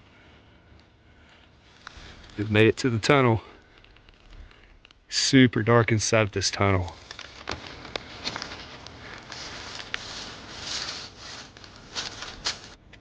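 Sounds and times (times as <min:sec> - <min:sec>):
rubbing and crunching noises: 0:00.8 - 0:12.8
sharp clicks: 0:03.6 - 0:05.1.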